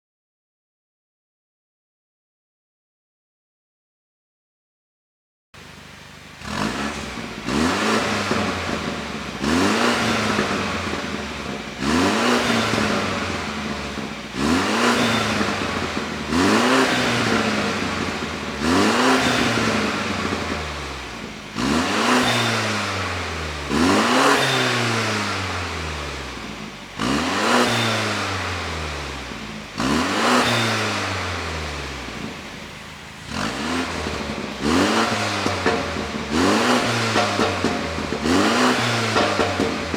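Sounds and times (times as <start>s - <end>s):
car engine revving in blips: 5.6s - 39.9s
exhaust crackling pops: 6.4s - 22.5s, 32.0s - 39.9s.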